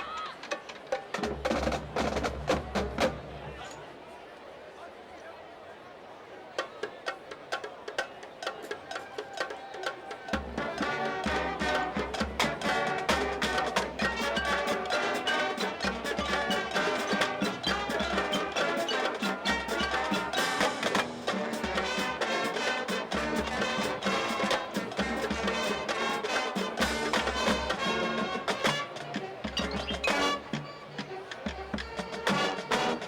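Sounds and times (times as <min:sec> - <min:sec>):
music with percussive beat: 0:10.3 - 0:33.0.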